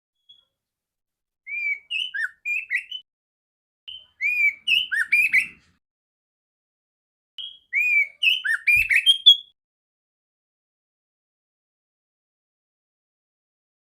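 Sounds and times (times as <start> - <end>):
bird singing whistled notes: 1.5 - 3.1, 3.9 - 5.8, 7.4 - 9.6.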